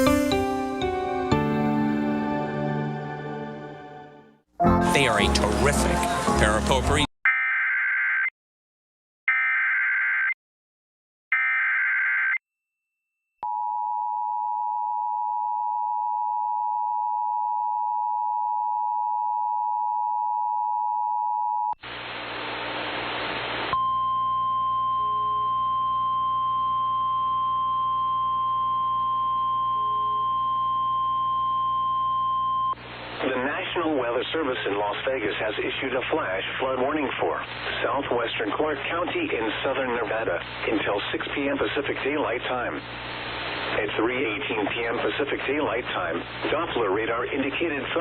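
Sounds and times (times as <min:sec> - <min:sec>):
burst of static: 0:21.8 - 0:23.7, 0:42.7 - 0:44.7
faint hum: 0:21.9 - 0:47.9.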